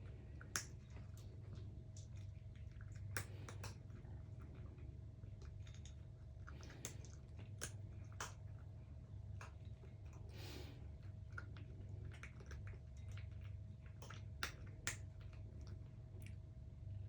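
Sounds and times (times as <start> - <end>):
cats chewing food: 0.0 - 17.0
steady low hum: 0.0 - 17.0.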